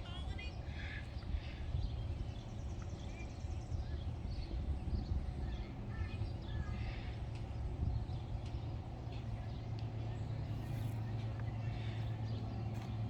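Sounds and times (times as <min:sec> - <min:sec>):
low outdoor rumble: 0:00.0 - 0:13.0.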